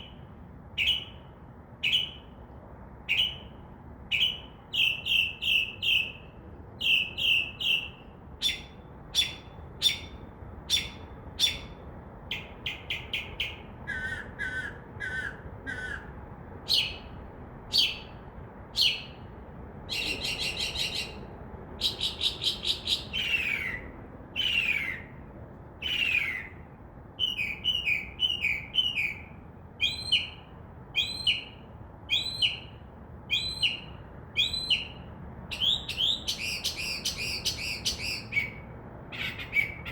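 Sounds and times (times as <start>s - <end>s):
mockingbird singing: 6.8s - 16.1s, 19.9s - 25.1s, 27.2s - 39.9s.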